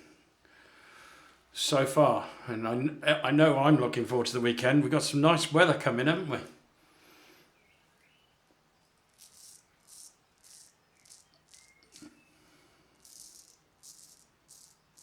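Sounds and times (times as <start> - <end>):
straight razor scraping stubble: 9.1 - 12.2.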